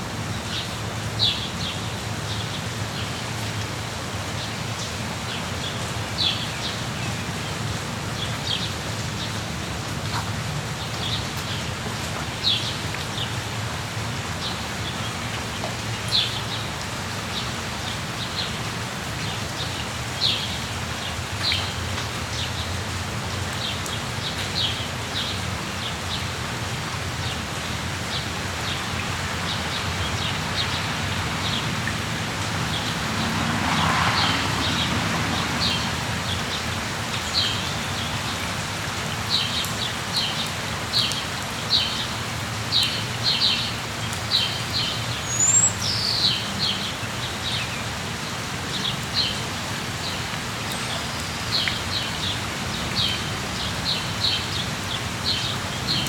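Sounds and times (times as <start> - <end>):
steady rain falling: 0.0 - 56.0
small birds chirping: 44.3 - 47.9.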